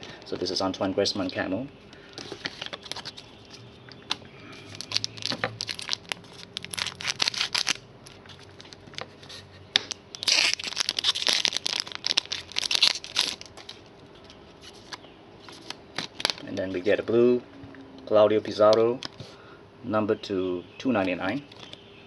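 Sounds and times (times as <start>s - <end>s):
card wrapping crinkling: 2.1s - 13.9s, 14.5s - 16.7s.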